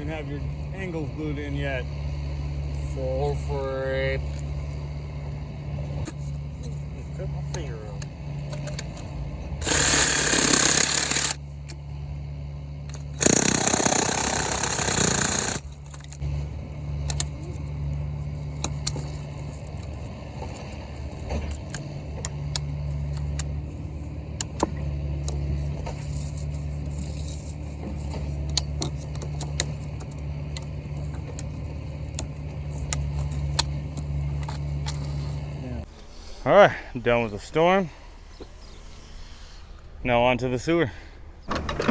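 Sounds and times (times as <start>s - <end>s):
diesel engine idling: 0.0s - 14.8s, 15.6s - 41.9s
loud rushing bursts: 35.9s - 41.9s
scattered clicks and knocks: 41.0s - 41.9s.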